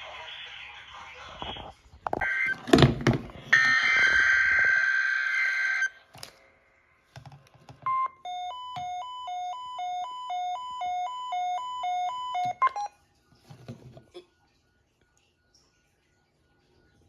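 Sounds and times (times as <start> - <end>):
screech of data tones: 3.5 - 6.0.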